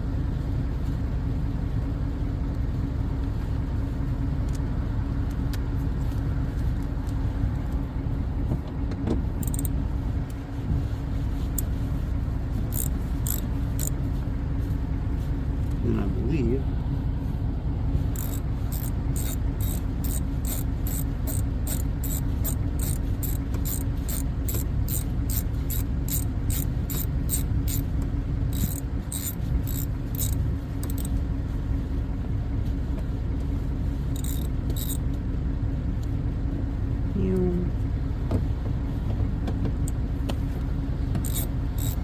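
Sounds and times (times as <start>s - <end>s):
steady low hum: 0.0s - 42.0s
ratchet wrench clicking: 9.4s - 9.8s, 12.7s - 14.0s, 18.1s - 31.1s, 34.1s - 35.0s, 41.2s - 42.0s.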